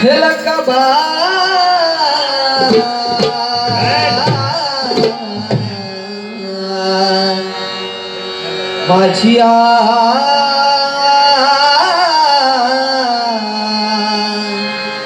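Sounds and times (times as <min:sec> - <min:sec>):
man singing devotional song: 0:00.0 - 0:15.0
instrumental drone: 0:02.3 - 0:15.0
hand drum strokes: 0:02.6 - 0:06.0.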